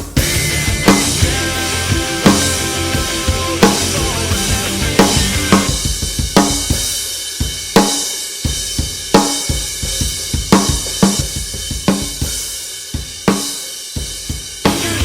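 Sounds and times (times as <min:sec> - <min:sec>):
bass drum: 0:00.0 - 0:07.6, 0:14.3 - 0:15.0
cymbals: 0:00.0 - 0:15.0.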